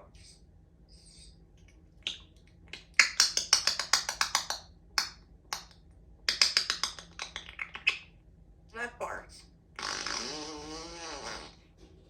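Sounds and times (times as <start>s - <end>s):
parrot clicking: 2.0s - 8.1s.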